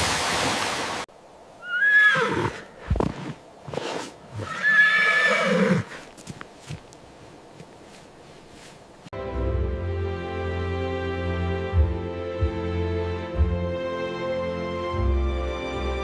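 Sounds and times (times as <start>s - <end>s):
horse whinnying: 1.6s - 3.0s, 3.8s - 6.0s.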